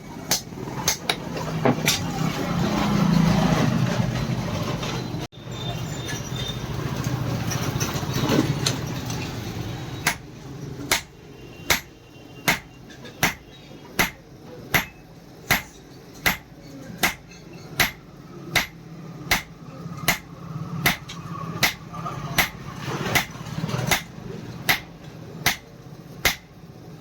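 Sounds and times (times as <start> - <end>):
hammer striking iron: 0.3 - 2.0, 10.0 - 10.3, 10.9 - 11.1, 11.7 - 21.8, 22.4 - 24.1, 24.7 - 26.5.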